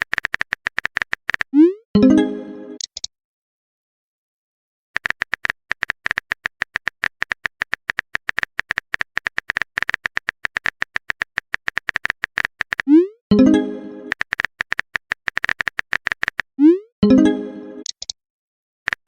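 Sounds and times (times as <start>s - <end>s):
rapid keyboard typing clicks: 0.0s - 1.6s, 5.0s - 12.9s, 14.1s - 16.6s.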